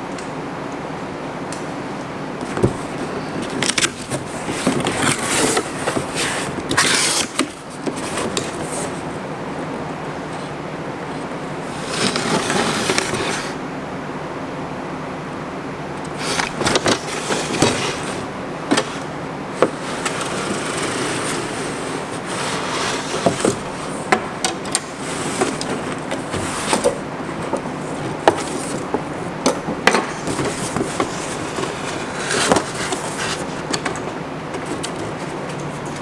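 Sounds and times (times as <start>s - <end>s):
steady background noise: 0.0s - 36.0s
cardboard box handled: 2.4s - 9.1s, 16.1s - 36.0s
scraping: 16.1s - 36.0s
rustling: 30.0s - 36.0s.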